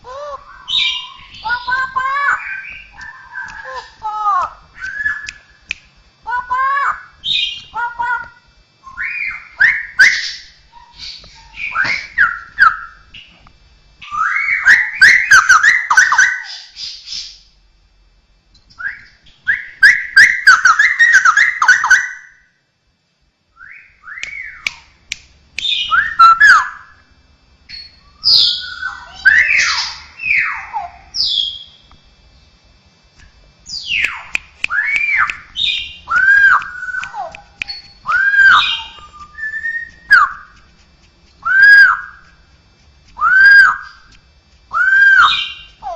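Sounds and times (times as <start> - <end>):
bulbul singing whistled notes: 27.7 - 30.6, 33.6 - 40.7, 41.3 - 42.4.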